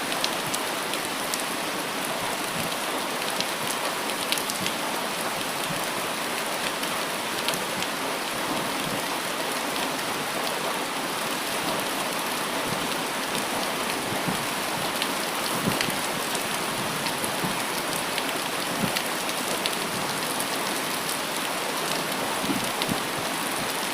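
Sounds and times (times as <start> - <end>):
rain falling on foliage: 0.0 - 23.9.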